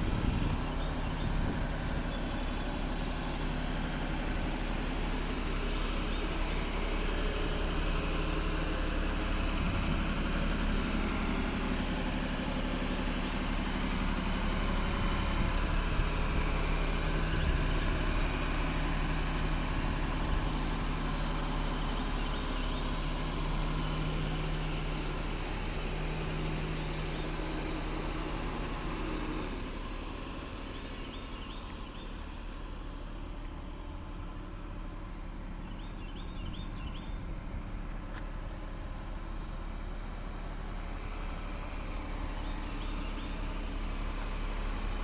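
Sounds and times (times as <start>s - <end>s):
car engine idling: 0.0s - 45.0s.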